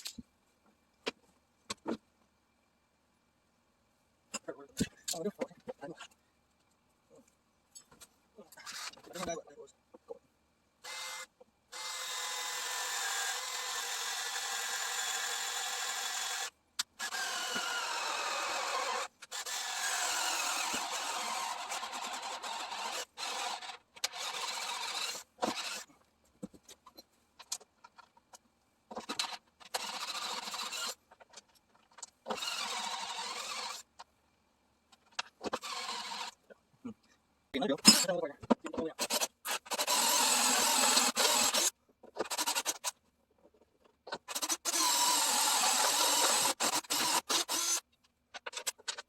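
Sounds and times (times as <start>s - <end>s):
handheld power tool running: 10.9s - 25.9s, 32.3s - 33.8s, 39.0s - 42.9s, 44.3s - 47.8s.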